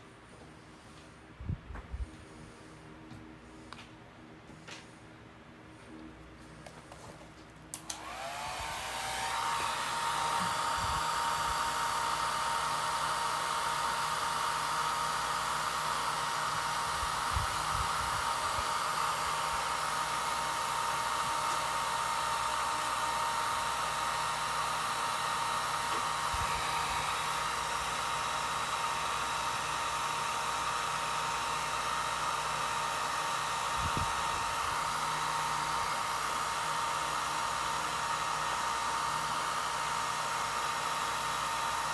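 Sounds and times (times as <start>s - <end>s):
hot-air blower motor whine: 7.7s - 41.9s.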